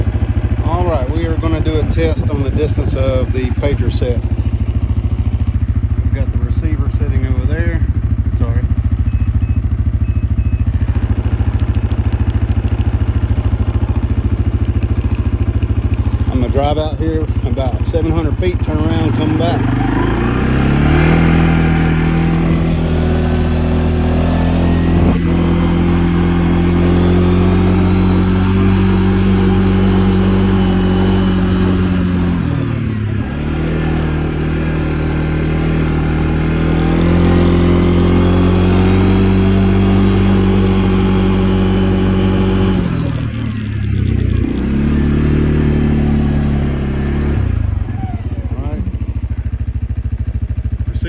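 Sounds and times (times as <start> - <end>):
vehicle engine running: 0.0 - 51.0.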